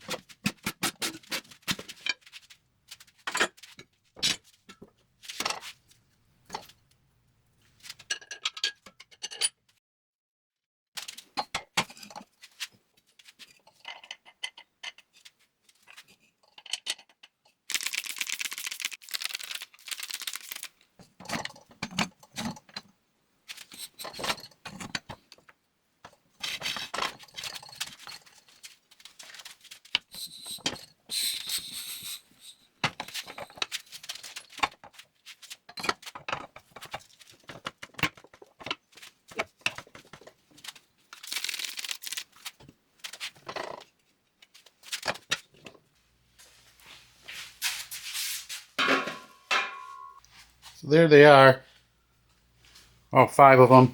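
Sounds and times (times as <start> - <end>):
metallic clanks and scrapes: 48.8 - 50.3.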